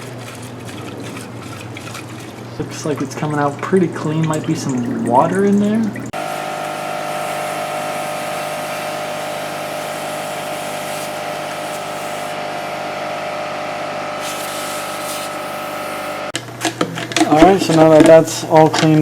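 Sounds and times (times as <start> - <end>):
machine hum: 5.9 - 16.4
air hiss: 6.2 - 16.4.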